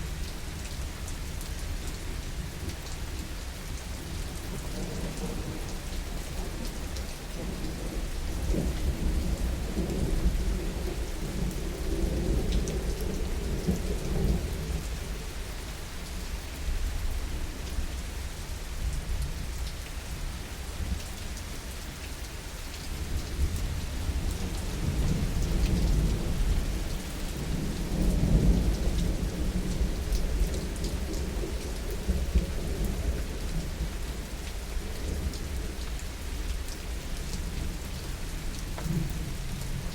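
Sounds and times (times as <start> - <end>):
heavy rain: 0.0 - 39.9
low rolls of thunder: 23.3 - 35.8.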